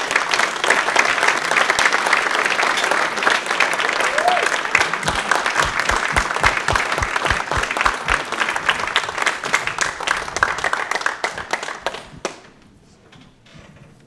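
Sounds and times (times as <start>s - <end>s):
audience applauding: 0.0s - 12.5s
low regular thump: 5.1s - 8.2s.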